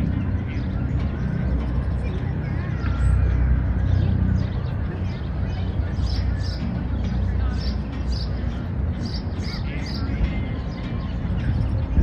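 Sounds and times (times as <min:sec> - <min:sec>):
birds chirping: 0:00.0 - 0:12.0
distant city traffic rumble: 0:00.0 - 0:12.0
faint indistinct voices: 0:00.0 - 0:12.0.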